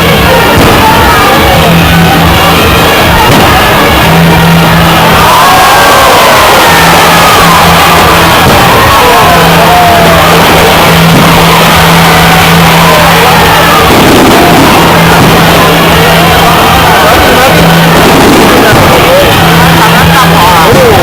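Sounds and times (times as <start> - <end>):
fireworks crackling: 0.0 - 21.0
fireworks whistling: 0.0 - 21.0
steady low drone: 0.0 - 21.0.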